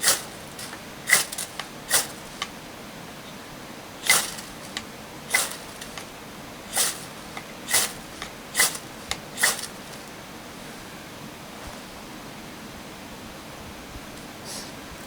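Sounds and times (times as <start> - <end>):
striker rasping down firesteel rod: 0.0 - 2.6, 4.0 - 6.1, 6.7 - 10.2.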